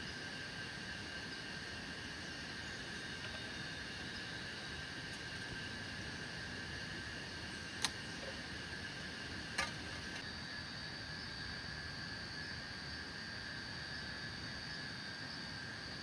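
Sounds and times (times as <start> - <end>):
forest insects chorus: 0.0 - 16.0
sharp clicks: 7.8 - 8.0.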